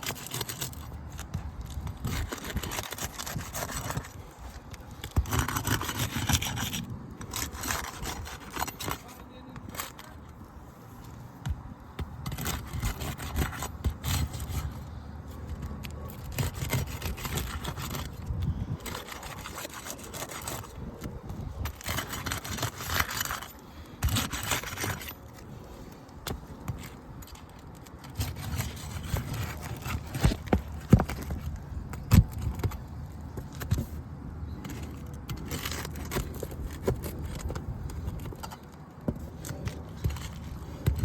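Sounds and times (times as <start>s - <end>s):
shingles scraping and rubbing: 0.0s - 41.0s.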